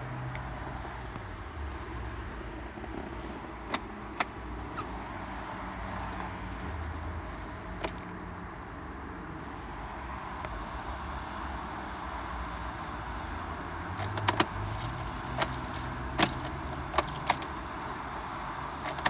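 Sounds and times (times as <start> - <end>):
keys jangling: 0.8 - 1.9, 2.8 - 8.1, 14.0 - 17.8
ignition key clicks: 2.8 - 8.1, 14.0 - 17.7.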